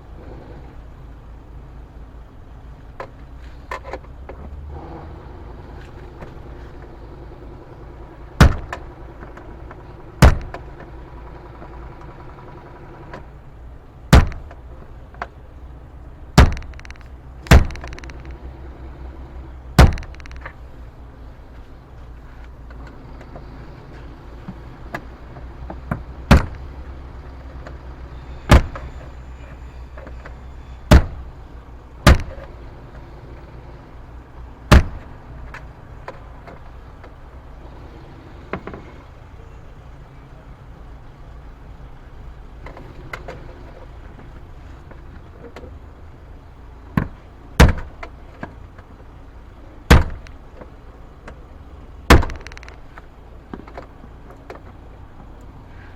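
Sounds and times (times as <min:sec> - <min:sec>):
low steady hum: 0:00.0 - 0:55.9
loud sharp knocks: 0:08.4 - 0:09.4, 0:10.2 - 0:12.4, 0:14.1 - 0:14.6, 0:16.4 - 0:18.4, 0:19.8 - 0:20.5, 0:25.7 - 0:26.8, 0:28.5 - 0:28.9, 0:30.9 - 0:31.3, 0:32.1 - 0:32.5, 0:34.7 - 0:35.1, 0:47.0 - 0:48.1, 0:49.9 - 0:50.4, 0:52.1 - 0:52.8.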